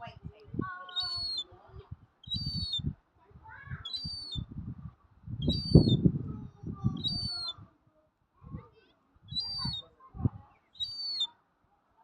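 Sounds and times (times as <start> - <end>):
gull calling: 0.9 - 1.5, 2.3 - 2.8, 3.8 - 4.4, 7.0 - 7.6, 9.3 - 9.8, 10.8 - 11.3.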